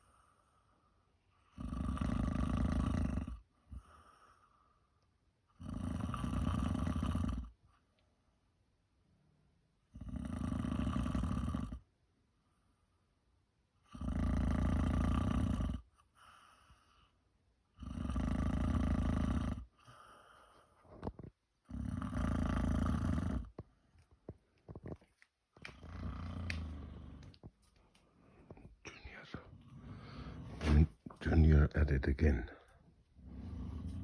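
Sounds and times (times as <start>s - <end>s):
person snoring: 1.6s - 3.4s, 5.6s - 7.5s, 10.0s - 11.8s, 13.9s - 15.8s, 17.8s - 19.7s, 21.7s - 23.6s, 25.8s - 27.4s.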